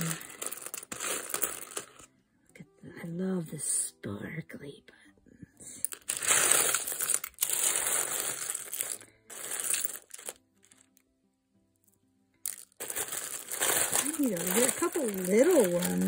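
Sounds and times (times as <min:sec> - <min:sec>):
buttons rustling and clattering: 0:00.0 - 0:02.1, 0:05.8 - 0:10.9, 0:12.5 - 0:16.0.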